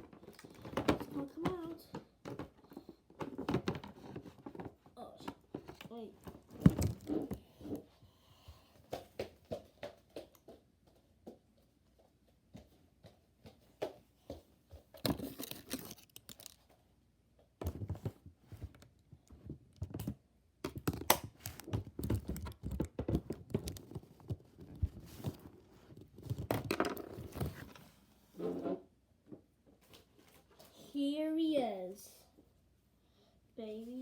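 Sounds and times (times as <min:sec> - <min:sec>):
packaging tearing and crinkling: 0:15.1 - 0:16.6.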